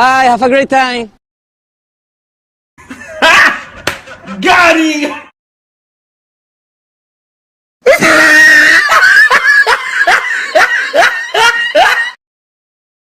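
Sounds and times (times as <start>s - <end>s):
person screaming shrilly: 7.8s - 9.2s.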